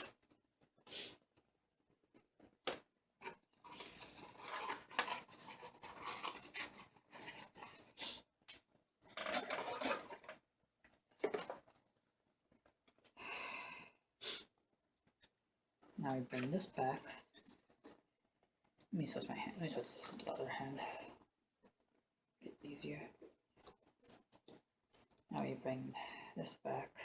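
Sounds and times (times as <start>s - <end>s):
rustling and light clicks of parts: 0.0s - 13.2s, 23.0s - 25.4s.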